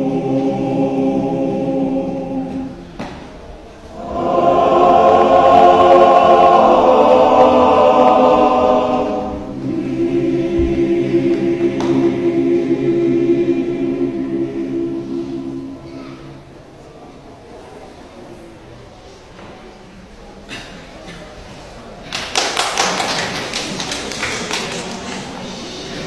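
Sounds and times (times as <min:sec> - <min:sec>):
men's choir singing held chords: 0:00.0 - 0:16.8.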